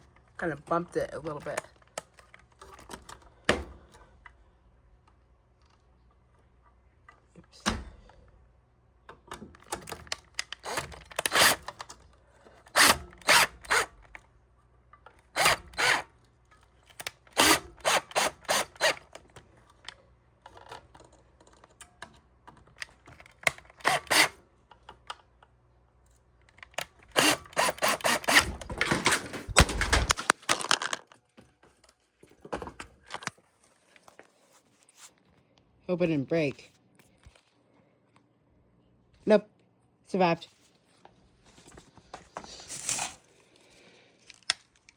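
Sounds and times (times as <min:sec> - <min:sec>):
power drill bursts: 0:10.6 - 0:11.7, 0:12.7 - 0:14.0, 0:15.4 - 0:16.1, 0:17.3 - 0:19.1, 0:23.7 - 0:24.4, 0:27.1 - 0:29.5
device clattering: 0:26.5 - 0:31.2.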